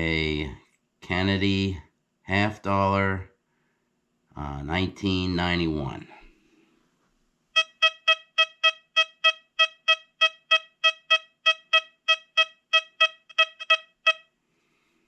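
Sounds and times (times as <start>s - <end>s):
metal detector beeps: 7.6s - 14.3s.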